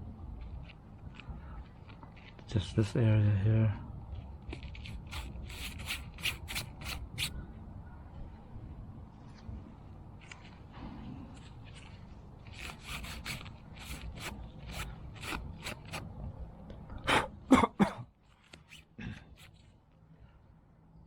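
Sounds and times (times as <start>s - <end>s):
hands scraping metal parts: 4.4s - 7.3s, 10.2s - 16.0s.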